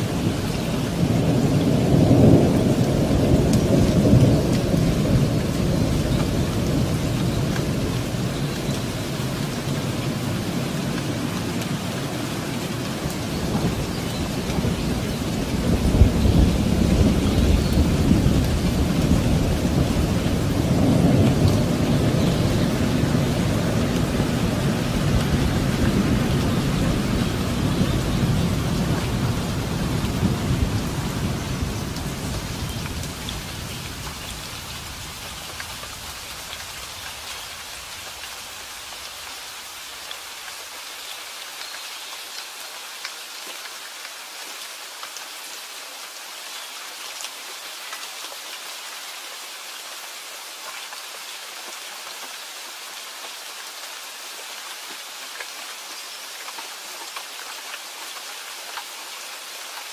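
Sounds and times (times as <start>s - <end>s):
steady rain: 0.0s - 59.9s
low rumble of thunder: 13.0s - 35.5s.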